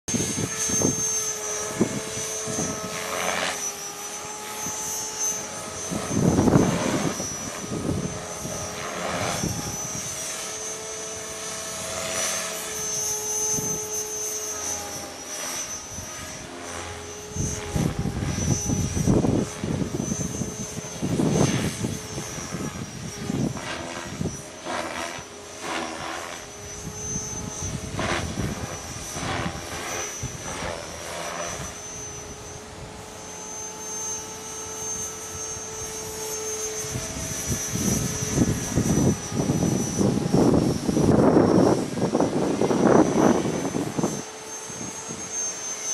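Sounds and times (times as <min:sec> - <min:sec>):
rc helicopter rotor hum: 0:00.0 - 0:45.9
wind buffeting microphone: 0:00.1 - 0:03.5, 0:04.4 - 0:10.4, 0:17.3 - 0:24.8, 0:26.0 - 0:31.7, 0:36.8 - 0:45.3.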